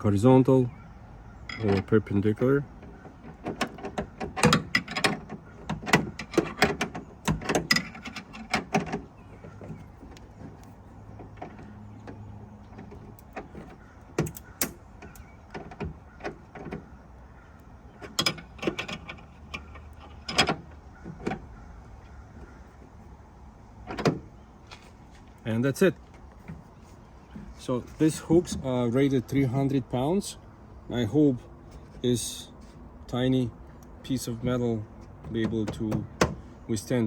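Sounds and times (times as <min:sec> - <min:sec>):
metal clicks and knocks: 0:01.4 - 0:17.0, 0:17.6 - 0:22.8, 0:23.8 - 0:24.3, 0:33.6 - 0:36.4.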